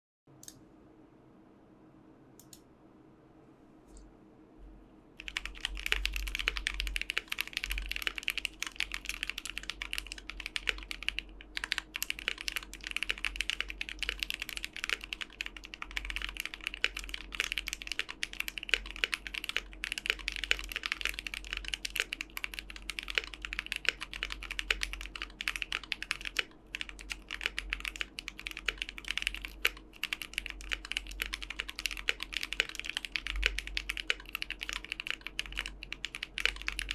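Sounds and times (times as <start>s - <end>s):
mechanical keyboard typing: 5.2s - 36.9s.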